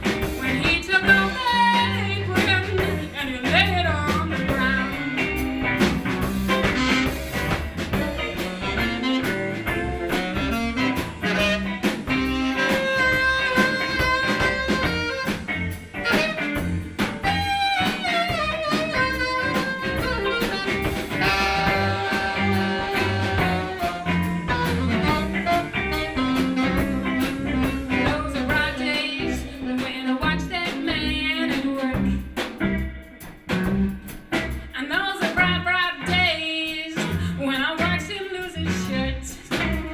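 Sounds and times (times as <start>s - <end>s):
guitar: 0.0s - 39.9s
live blues band playing: 0.0s - 39.9s
woman singing: 0.4s - 5.5s, 21.6s - 24.2s, 26.6s - 32.3s, 34.7s - 39.9s.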